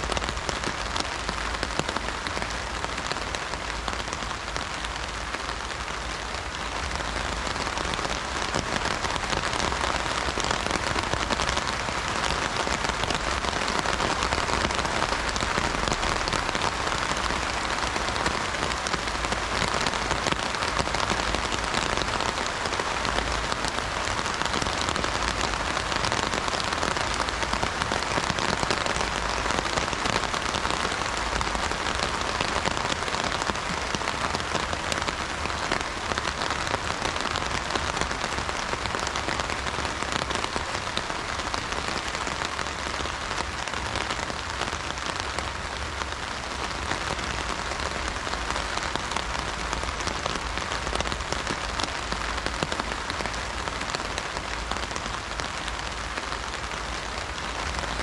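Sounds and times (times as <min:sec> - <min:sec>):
heavy rain on umbrella: 0:00.0 - 0:58.0.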